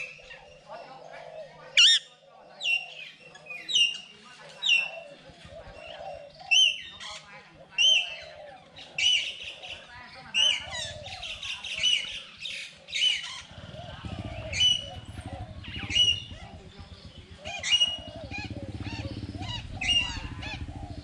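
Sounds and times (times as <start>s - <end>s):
birds squawking and chirping: 0.0s - 21.0s
low pulsing drone: 13.4s - 21.0s.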